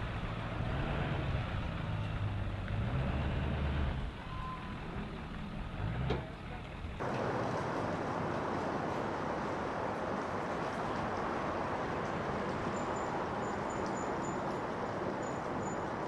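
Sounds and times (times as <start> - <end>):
engine idling: 0.0 - 7.2.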